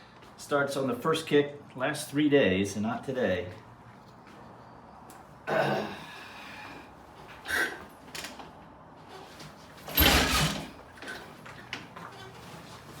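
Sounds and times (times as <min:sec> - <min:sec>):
motorcycle kickstart stroke: 0:09.9 - 0:10.8.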